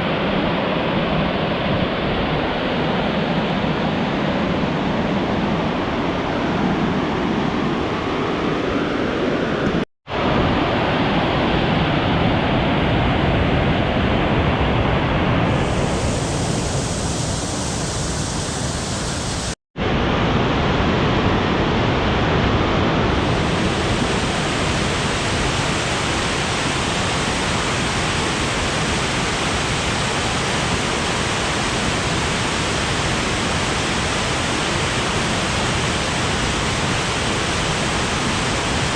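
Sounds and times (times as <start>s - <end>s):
waterfall rushing: 15.4s - 20.0s, 23.2s - 38.9s.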